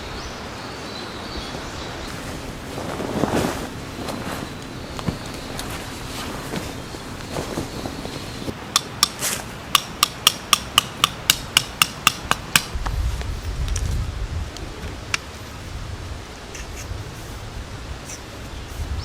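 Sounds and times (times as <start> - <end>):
hammer striking metal: 8.7 - 12.7.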